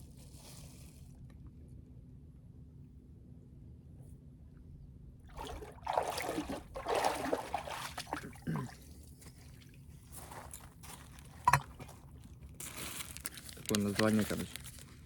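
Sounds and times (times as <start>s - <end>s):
liquid trickling and sloshing: 5.3s - 12.0s.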